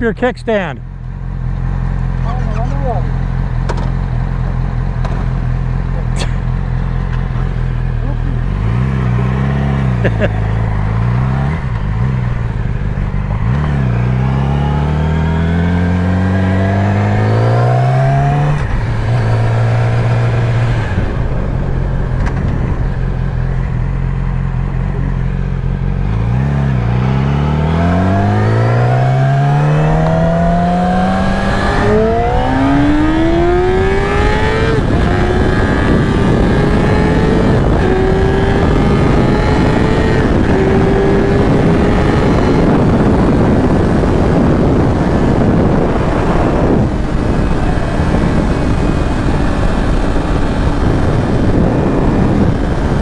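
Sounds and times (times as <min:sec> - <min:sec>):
motorcycle engine accelerating: 0:00.0 - 0:53.0
wind rush: 0:10.3 - 0:25.3, 0:26.0 - 0:53.0.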